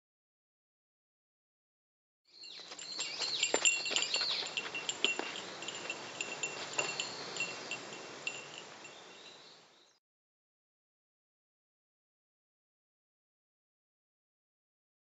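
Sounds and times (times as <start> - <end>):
chimes tinkling: 2.4 - 9.5.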